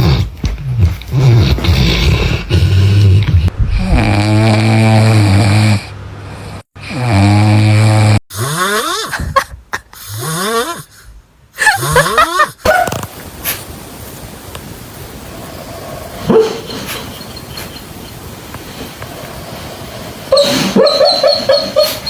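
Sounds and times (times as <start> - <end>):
dog snoring loudly: 0.0 - 8.8, 15.3 - 22.0.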